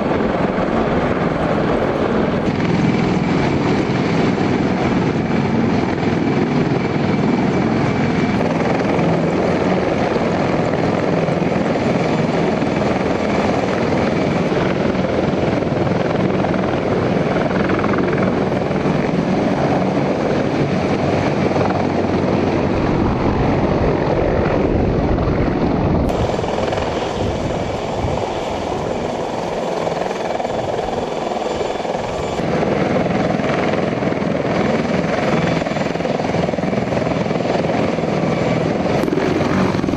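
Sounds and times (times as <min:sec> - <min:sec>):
helicopter rotor and engines: 0:00.0 - 0:39.9.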